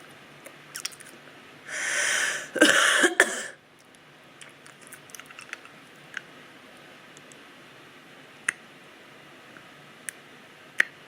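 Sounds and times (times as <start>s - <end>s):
woman coughing: 2.4s - 3.6s.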